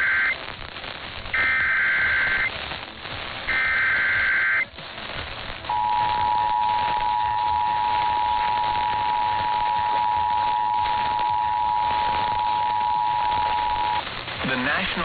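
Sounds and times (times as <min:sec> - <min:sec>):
broadcast noise hiss: 0:00.0 - 0:15.0
steady two-tone alert signal: 0:05.7 - 0:14.0.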